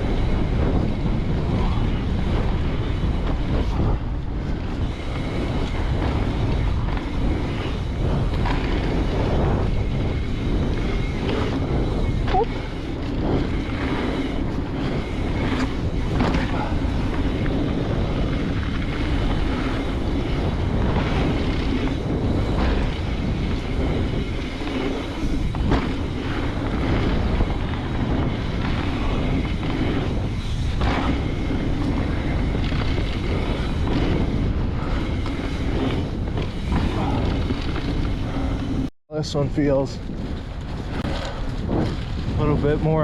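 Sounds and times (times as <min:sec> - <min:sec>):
bike tyre rumble on dirt: 0:00.0 - 0:43.0
wind rushing over microphone: 0:00.0 - 0:43.0
knocks and clicks from bike: 0:04.4 - 0:38.8.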